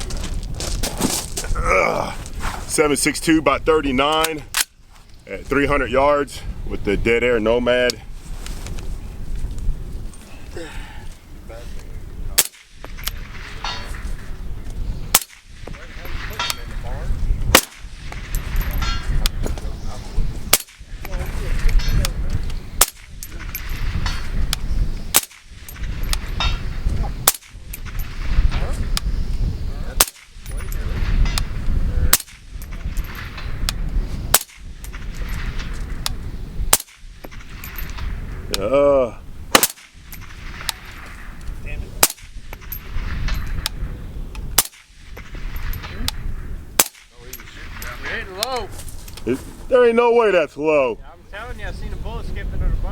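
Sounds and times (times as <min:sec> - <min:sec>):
low wind rumble: 0:00.0 - 0:52.9
suppressed rifle shots: 0:15.1 - 0:16.8, 0:17.5 - 0:19.4, 0:25.1 - 0:26.6, 0:30.0 - 0:38.2, 0:39.5 - 0:41.4, 0:42.0 - 0:43.8, 0:44.5 - 0:48.1.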